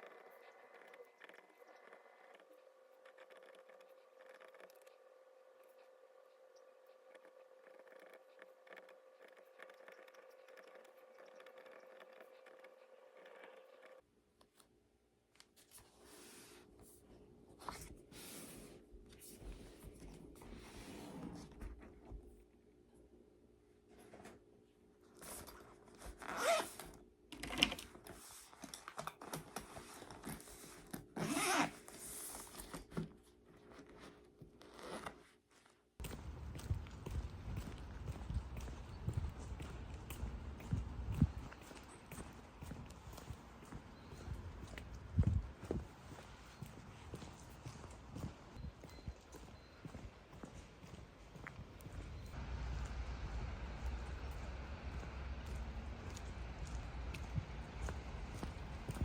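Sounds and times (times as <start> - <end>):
steady hum: 51.0 - 59.0.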